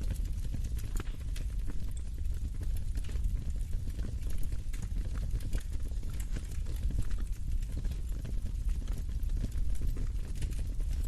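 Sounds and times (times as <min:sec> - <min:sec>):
wood fire crackling: 0:00.0 - 0:11.0.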